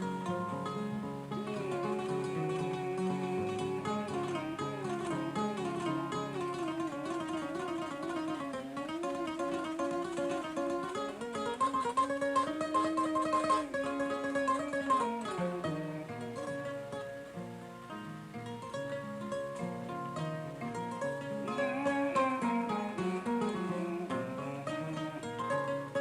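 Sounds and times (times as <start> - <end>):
harp-lute plucked: 0.0 - 26.0
man singing: 21.4 - 25.9.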